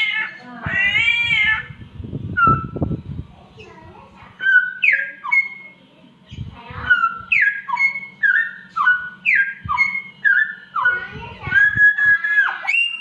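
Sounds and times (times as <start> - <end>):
bird whistling slurred notes: 2.3 - 3.0, 4.4 - 13.0.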